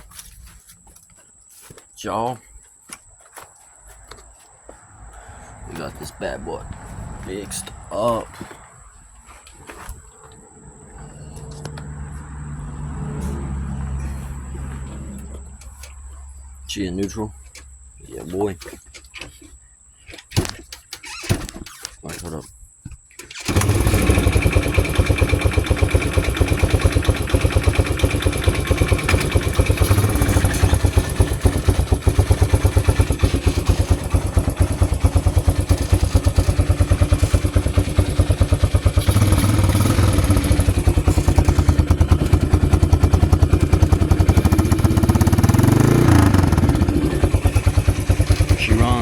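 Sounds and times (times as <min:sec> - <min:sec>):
vehicle engine starting and running: 0:09.7 - 0:17.2, 0:23.3 - 0:49.0.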